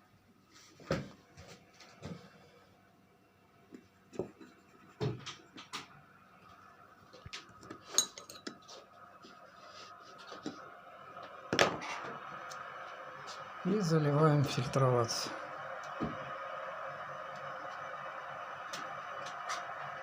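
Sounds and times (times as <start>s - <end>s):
glass jars and utensils clinking: 7.8s - 8.6s.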